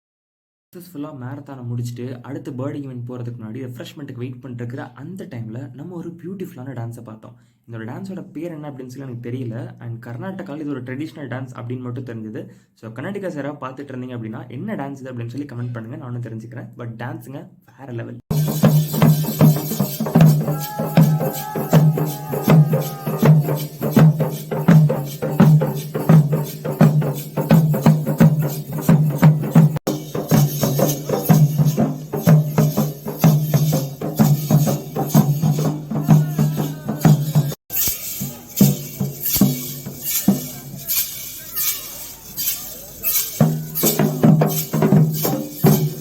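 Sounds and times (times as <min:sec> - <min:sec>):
fast dense drum strikes: 0:18.3 - 0:37.6
jingling clashing percussion: 0:18.3 - 0:46.0.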